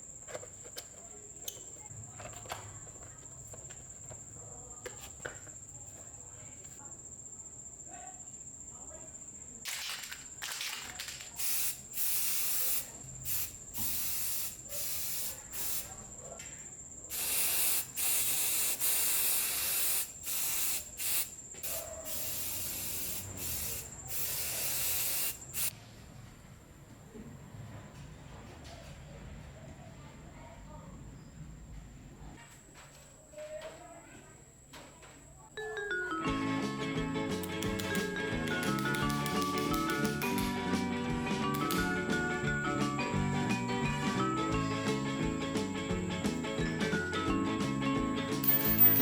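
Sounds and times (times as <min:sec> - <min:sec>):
pressurized spray hissing: 0:11.4 - 0:16.0, 0:17.1 - 0:25.7.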